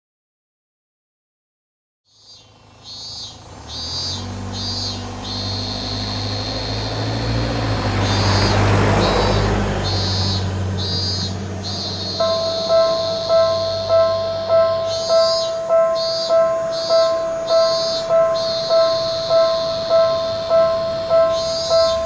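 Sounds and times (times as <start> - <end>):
train rumble and hum: 6.7 - 22.0
level-crossing alarm dinging: 7.8 - 22.0.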